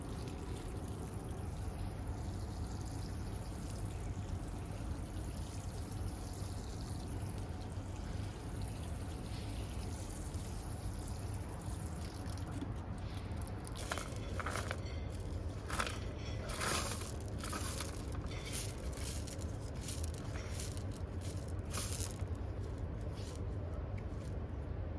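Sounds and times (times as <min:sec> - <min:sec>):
water trickling and pouring: 0:00.0 - 0:22.3
low even hum: 0:00.0 - 0:24.9
crunching rustles: 0:13.6 - 0:24.5.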